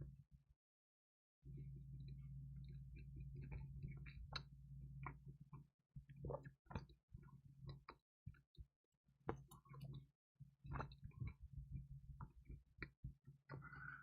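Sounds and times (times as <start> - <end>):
steady low hum: 1.5 - 6.5.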